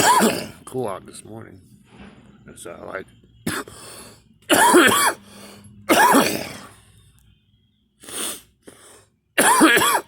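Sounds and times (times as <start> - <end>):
person coughing: 0.0 - 0.6, 3.4 - 3.8, 4.5 - 5.2, 5.9 - 6.7, 9.4 - 10.0.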